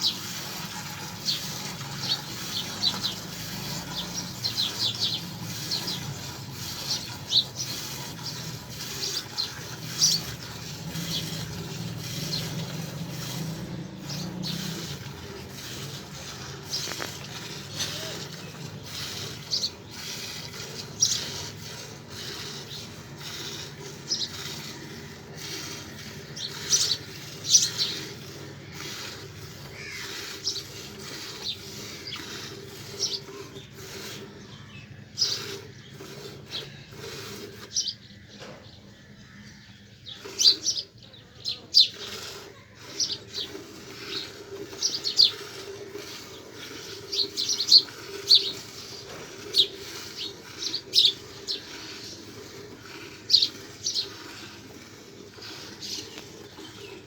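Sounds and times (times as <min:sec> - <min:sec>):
milk squirting into a pail: 0:00.0 - 0:37.8, 0:40.2 - 0:40.6, 0:41.9 - 0:57.0.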